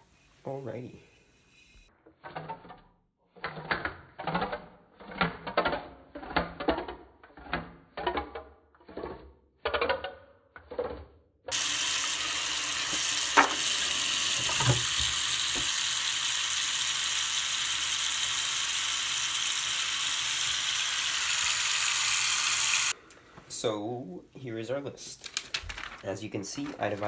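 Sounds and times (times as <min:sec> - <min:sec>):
loud steady hiss: 0:11.6 - 0:22.9.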